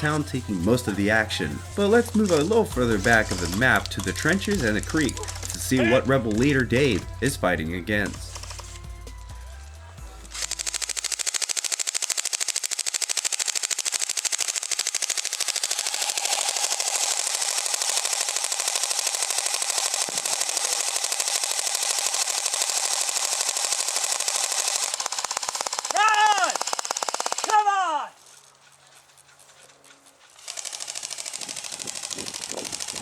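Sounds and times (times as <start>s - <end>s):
airsoft guns firing full auto: 0.0s - 33.0s.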